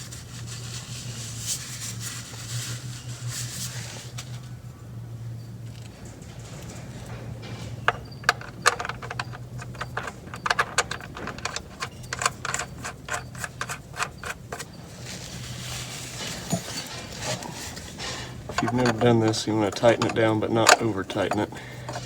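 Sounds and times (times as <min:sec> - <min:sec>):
steady low hum: 0:00.0 - 0:22.0
wrench clicking on metal: 0:07.9 - 0:14.8, 0:17.2 - 0:22.0.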